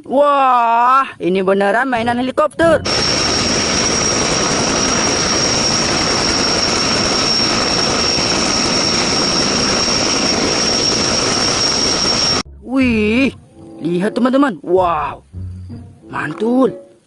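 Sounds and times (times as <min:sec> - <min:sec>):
helicopter rushing and whining: 0:02.6 - 0:12.4.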